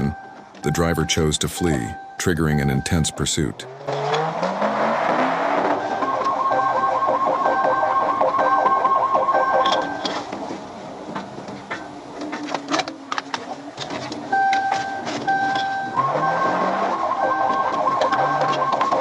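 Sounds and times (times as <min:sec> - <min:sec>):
steady beeping tone: 0:00.0 - 0:03.7, 0:05.7 - 0:10.3, 0:14.3 - 0:19.0
engine revving: 0:03.6 - 0:07.2, 0:15.3 - 0:19.0
police siren fast warble: 0:04.8 - 0:10.2, 0:14.4 - 0:19.0.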